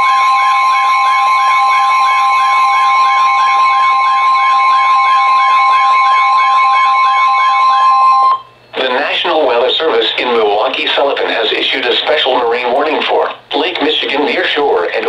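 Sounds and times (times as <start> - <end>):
warbling alarm: 0.0 - 12.9
steady alert tone: 2.0 - 9.4.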